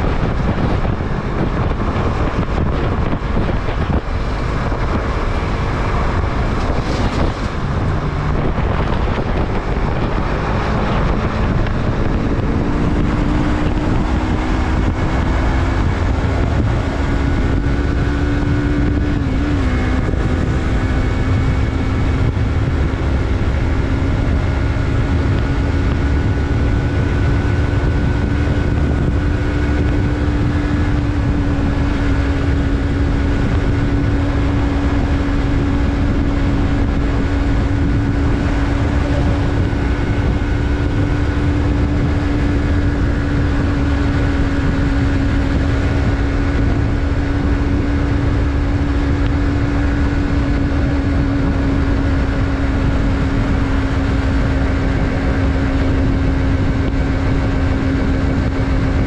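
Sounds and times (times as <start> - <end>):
low rumble of riding noise: 0.0 - 59.0
motorcycle engine cruising: 0.0 - 59.0.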